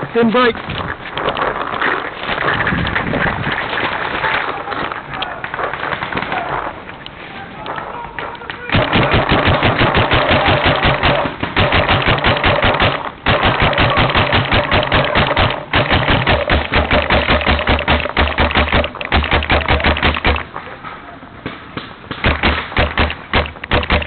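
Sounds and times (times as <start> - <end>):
paintball marker rapid firing: 8.7 - 20.5, 21.8 - 24.0.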